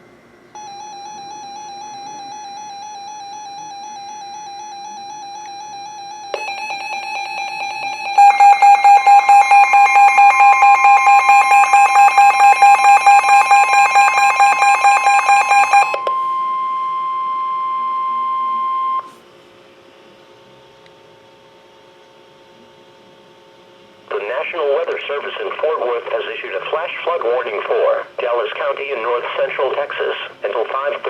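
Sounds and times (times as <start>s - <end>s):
electronic beeping alarm: 0.6s - 19.1s
steady alarm tone: 0.6s - 19.1s
faint radio hiss: 24.1s - 31.0s.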